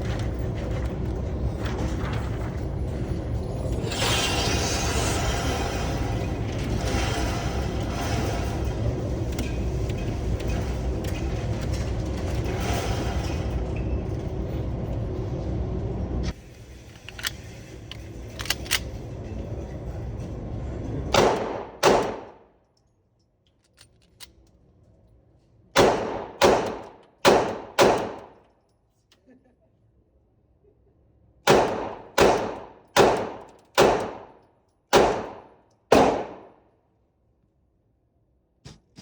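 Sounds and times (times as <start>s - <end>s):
low rumble: 0.0s - 16.5s
gunshots with echo: 21.1s - 22.4s, 25.8s - 28.4s, 31.5s - 36.6s.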